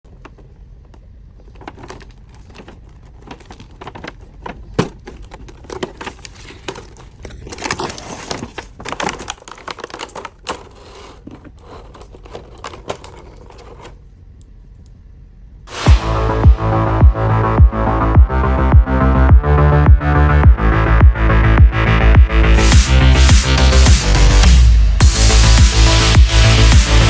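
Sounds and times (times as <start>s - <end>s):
plastic packaging crinkling: 0.1s - 14.1s.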